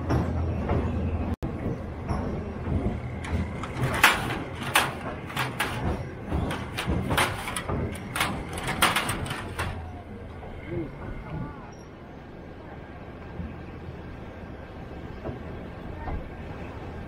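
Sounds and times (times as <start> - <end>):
train carriage clattering: 0.0 - 11.8, 12.6 - 17.0
sharp knocks and clanks: 1.6 - 10.0.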